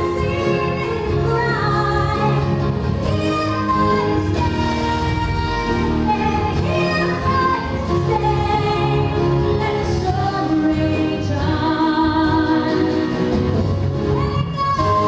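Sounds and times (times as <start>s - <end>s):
woman singing: 0.0s - 13.4s, 14.1s - 15.0s
instrumental backing: 0.0s - 15.0s.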